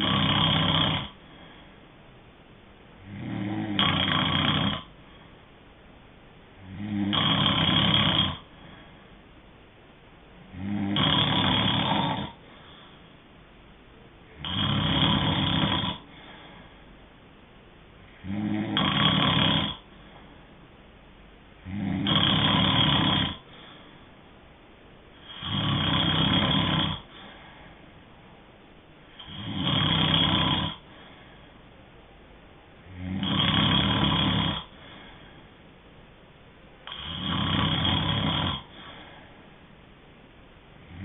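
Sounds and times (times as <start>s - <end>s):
person snoring: 0.0s - 1.2s, 3.0s - 4.9s, 6.6s - 8.5s, 10.5s - 12.4s, 14.3s - 16.4s, 18.2s - 19.9s, 21.6s - 23.5s, 25.2s - 27.4s, 29.2s - 30.9s, 32.8s - 35.1s, 36.8s - 39.2s, 40.8s - 41.0s.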